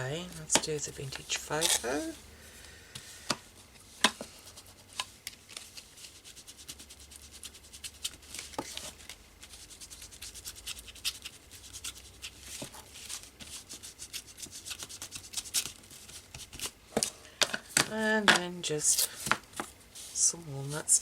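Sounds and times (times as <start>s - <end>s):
scratchy rubbing on paper card: 5.7s - 16.7s.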